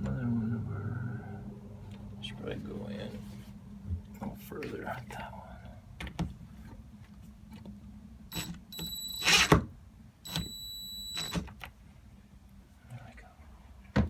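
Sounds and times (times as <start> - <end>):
power drill whining: 8.3 - 9.6, 10.3 - 11.5
screw driving into wood: 8.3 - 9.7.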